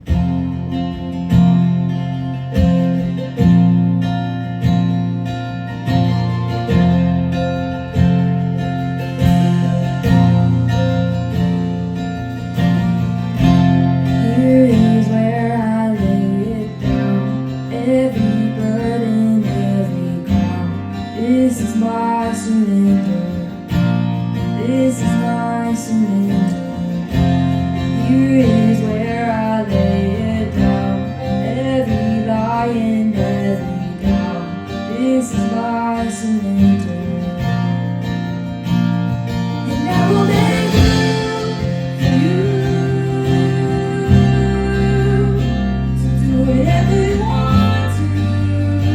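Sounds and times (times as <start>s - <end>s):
acoustic guitar strumming chords: 0.0s - 48.9s
band playing: 39.4s - 45.7s.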